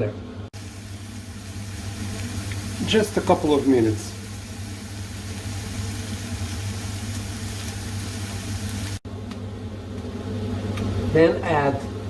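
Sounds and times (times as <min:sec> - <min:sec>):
steady low hum: 0:00.0 - 0:12.0
garlic sizzling in oil: 0:00.6 - 0:09.0.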